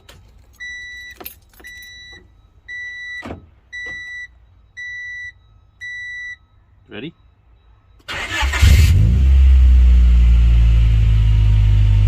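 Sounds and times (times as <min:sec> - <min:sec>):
electronic warning beeps: 0:00.0 - 0:08.1.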